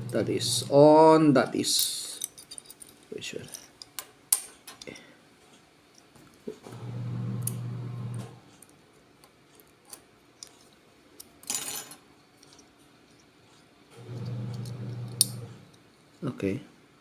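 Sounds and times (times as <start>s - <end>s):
low steady hum: 0.0s - 5.2s
small parts clicking and clinking: 1.7s - 5.1s, 8.5s - 13.6s.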